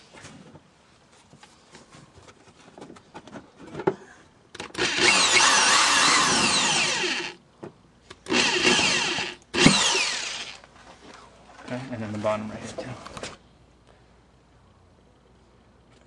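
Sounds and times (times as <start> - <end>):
power drill boring plastic: 4.6 - 7.4, 8.3 - 10.6.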